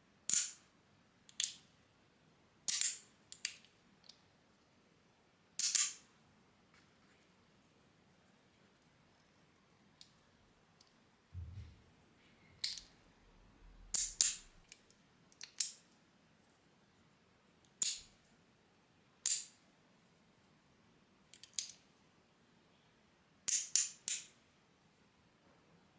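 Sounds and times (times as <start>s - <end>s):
soft low thump: 11.4s - 11.9s.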